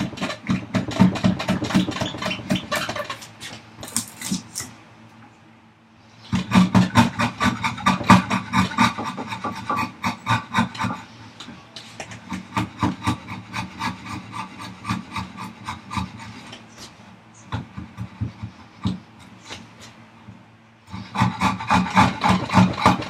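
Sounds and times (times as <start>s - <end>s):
wood rasp filing: 0.0s - 3.3s, 6.2s - 11.4s, 12.0s - 17.0s, 20.9s - 23.0s.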